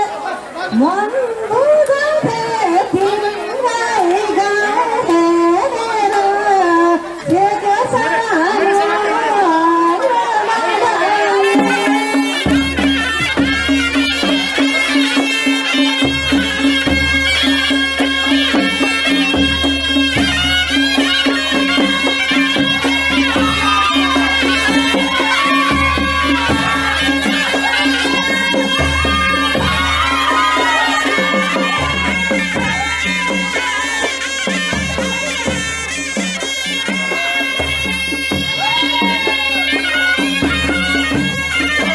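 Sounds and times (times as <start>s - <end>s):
reedy wind instrument melody: 8.0s - 41.9s
low drum beat: 18.3s - 33.7s.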